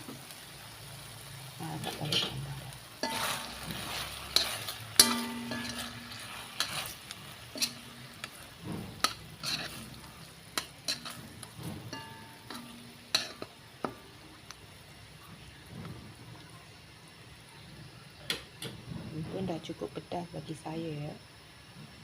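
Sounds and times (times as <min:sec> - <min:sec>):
light sizzle: 0:00.0 - 0:22.0
utensil scraping a metal pan: 0:01.8 - 0:13.6.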